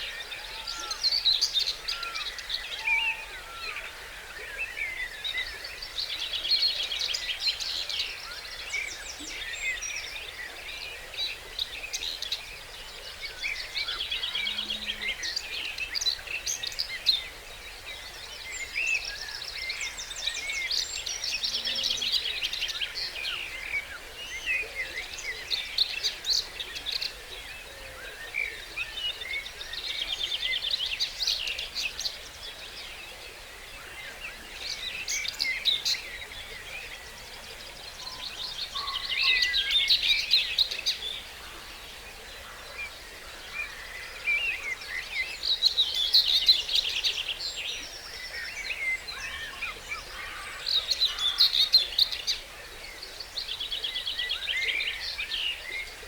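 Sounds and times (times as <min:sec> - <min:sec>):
songbirds singing: 0:00.0 - 0:56.0.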